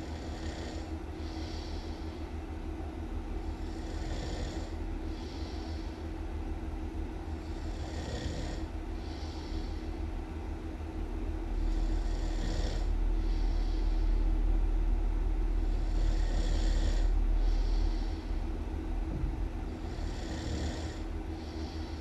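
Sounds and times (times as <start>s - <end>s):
loud snoring: 0.0s - 0.9s, 3.6s - 4.7s, 7.4s - 9.4s, 11.6s - 12.9s, 15.7s - 17.1s, 19.8s - 21.0s
deep rumble: 8.6s - 20.2s.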